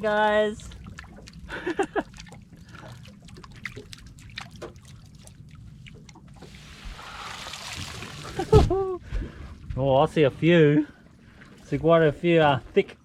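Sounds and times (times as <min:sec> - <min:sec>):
water trickling and dripping: 0:00.0 - 0:08.6
stream of water: 0:00.0 - 0:09.5.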